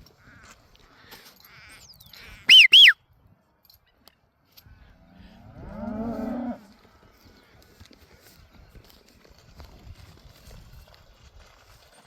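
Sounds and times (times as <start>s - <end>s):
rising-and-falling whistles: 2.5s - 3.0s.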